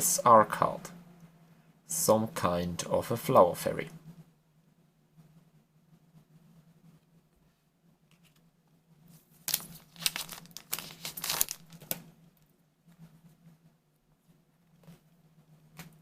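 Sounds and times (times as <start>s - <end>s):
faint low hum: 0.0s - 16.0s
wrapper crinkling and rustling: 9.2s - 12.0s.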